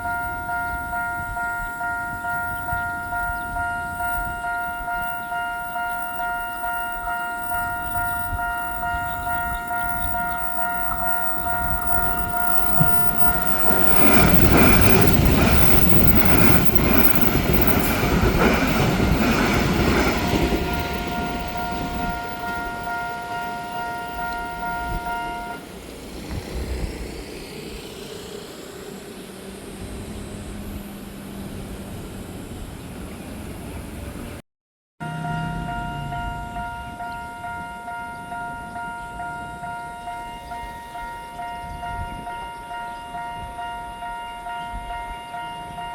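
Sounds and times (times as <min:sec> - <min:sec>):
train wheels clattering on rails: 0:00.0 - 0:27.4.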